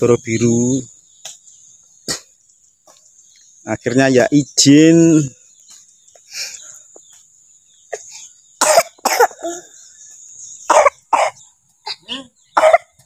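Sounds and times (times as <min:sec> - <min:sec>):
child coughing: 0:02.1 - 0:02.3, 0:07.9 - 0:09.7, 0:10.7 - 0:13.0.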